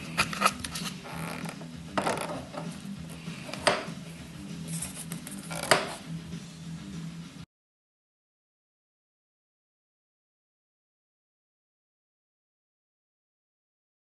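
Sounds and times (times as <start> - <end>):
rustling and handling noise: 0.0 - 6.0
sharp clicks or knocks: 3.5 - 3.9.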